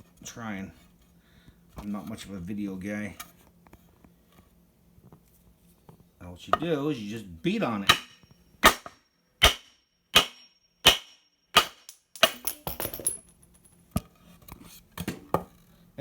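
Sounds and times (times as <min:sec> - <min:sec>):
hammer striking wood block: 0:07.8 - 0:12.7.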